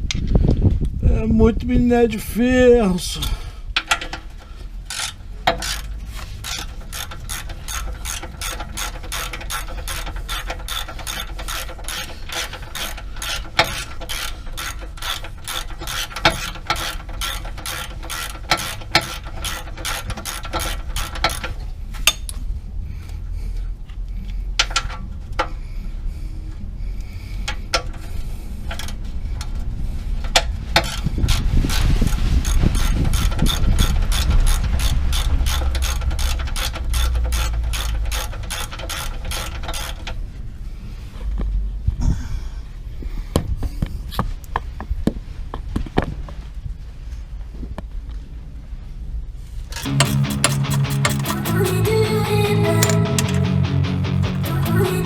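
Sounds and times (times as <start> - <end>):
ratchet wrench clicking: 4.9 - 22.3, 32.4 - 40.0, 49.8 - 53.6.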